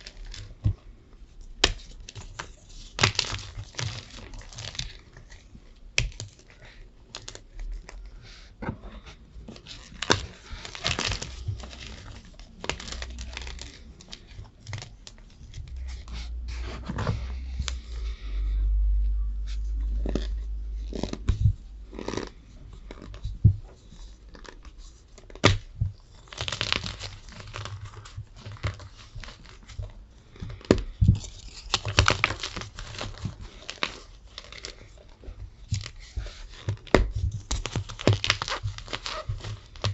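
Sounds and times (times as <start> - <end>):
low rumble: 10.5 - 23.9.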